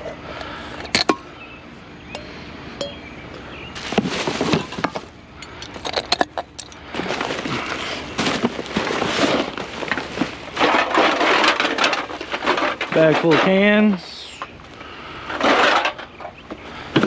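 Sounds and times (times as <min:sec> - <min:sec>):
bag rustling: 0:03.8 - 0:05.1, 0:06.9 - 0:13.0.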